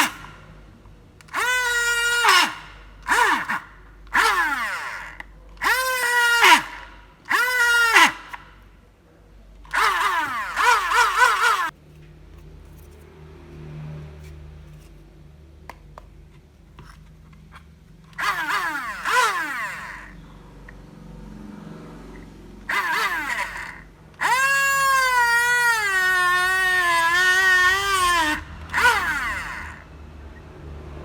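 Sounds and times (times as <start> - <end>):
small electric motor whining: 0.0 - 0.6, 1.2 - 8.7, 9.7 - 11.8, 16.8 - 20.8, 22.1 - 30.5.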